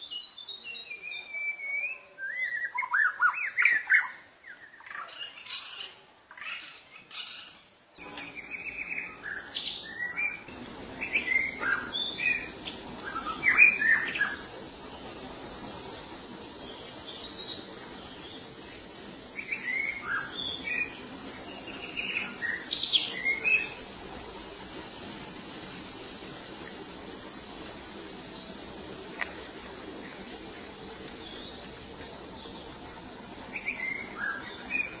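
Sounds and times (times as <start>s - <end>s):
bird whistling song: 0.0s - 4.2s, 8.0s - 35.0s
insects droning: 8.0s - 35.0s.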